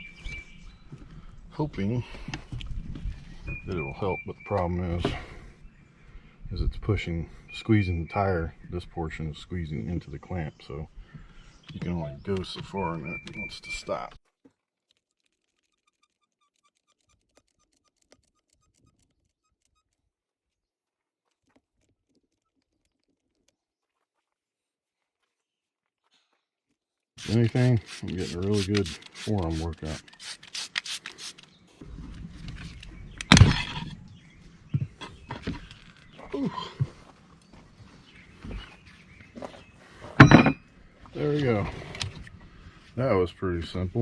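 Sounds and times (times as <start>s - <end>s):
rapid ticking: 15.0s - 20.0s.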